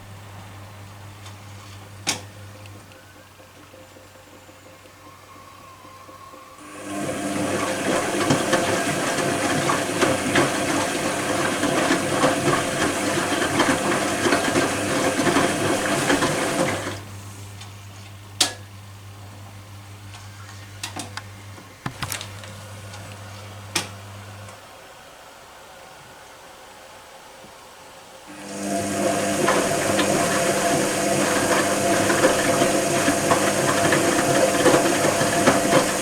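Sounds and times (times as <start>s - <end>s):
low electric hum: 0.0s - 7.3s, 17.0s - 24.8s
washing machine churning water: 6.6s - 17.4s, 28.3s - 36.0s.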